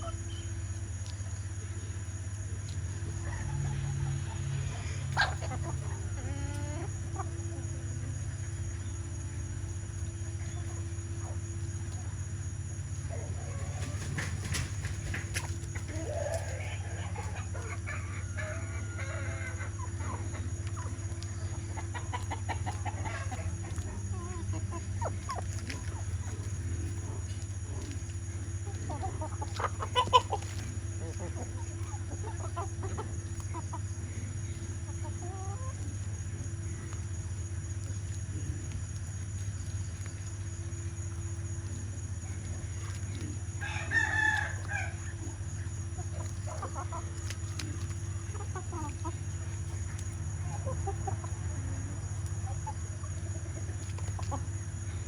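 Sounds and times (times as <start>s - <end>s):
chickens clucking: 0.0s - 55.0s
steady low hum: 0.0s - 55.0s
rooster crowing: 3.2s - 5.5s, 13.2s - 14.4s, 15.8s - 20.0s, 43.6s - 45.2s.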